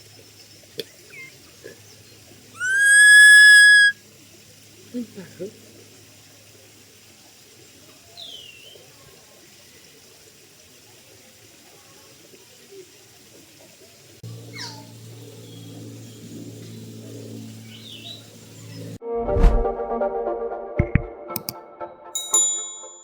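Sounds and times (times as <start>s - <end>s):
parrot calling: 2.6s - 4.0s
background music: 19.0s - 22.2s.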